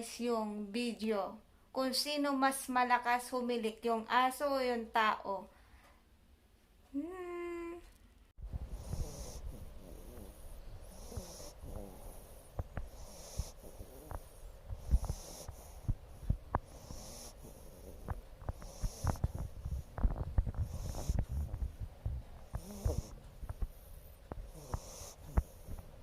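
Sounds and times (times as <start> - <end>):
puppy snoring: 8.5 - 26.0.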